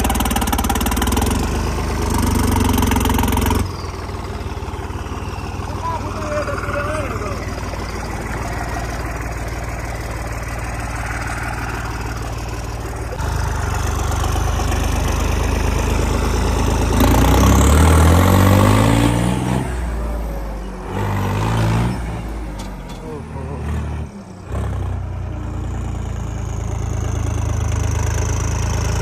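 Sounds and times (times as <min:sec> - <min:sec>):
diesel tractor engine revving: 0:00.0 - 0:29.0.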